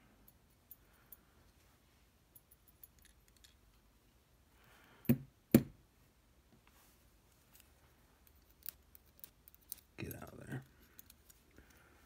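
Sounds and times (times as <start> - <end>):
small clicks of lock parts: 2.7 - 3.7, 7.5 - 10.0, 10.6 - 11.8.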